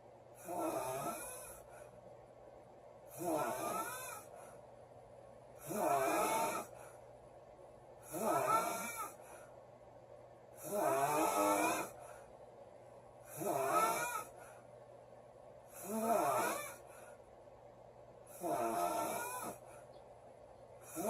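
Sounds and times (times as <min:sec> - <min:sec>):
woman snoring loudly: 0:00.4 - 0:01.7, 0:03.1 - 0:04.3, 0:05.6 - 0:06.8, 0:08.1 - 0:09.2, 0:10.6 - 0:12.0, 0:13.3 - 0:14.4, 0:15.8 - 0:16.9, 0:18.3 - 0:19.6.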